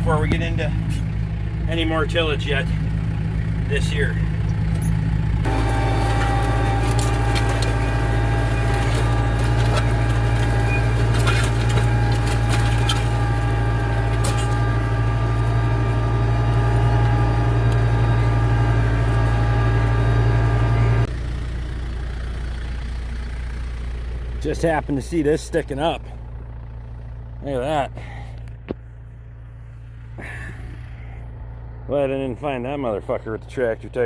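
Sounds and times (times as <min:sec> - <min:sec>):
tractor engine running: 0:00.0 - 0:34.0
clanks and rattles: 0:04.4 - 0:18.0.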